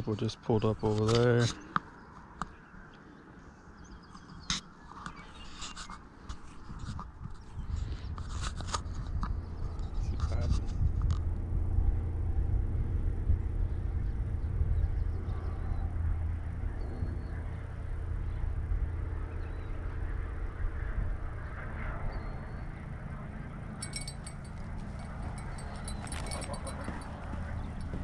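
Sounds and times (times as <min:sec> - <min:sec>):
low rumble with motor hum: 0:08.9 - 0:28.0.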